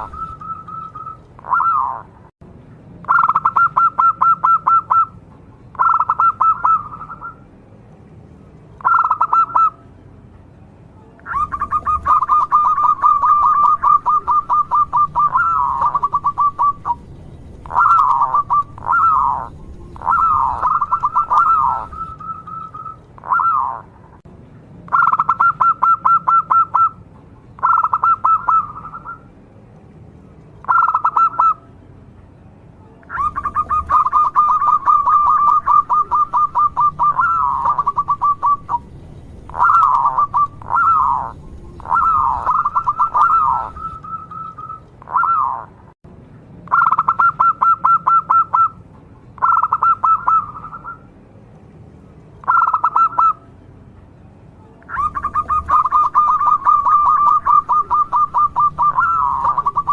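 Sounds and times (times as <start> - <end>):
dove cooing and trilling: 0.0 - 2.1, 3.0 - 7.4, 8.8 - 9.8, 11.2 - 23.9, 24.9 - 27.0, 27.6 - 29.2, 30.6 - 31.6, 33.1 - 45.8, 46.7 - 48.8, 49.4 - 51.1, 52.4 - 53.4, 54.9 - 59.9.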